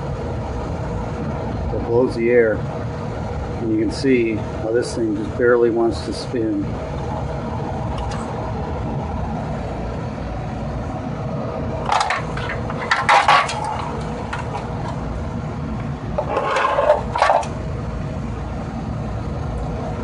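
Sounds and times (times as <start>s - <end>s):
furnace motor humming: 0.0s - 20.0s
knocks and scrapes: 11.9s - 15.0s, 16.2s - 17.5s.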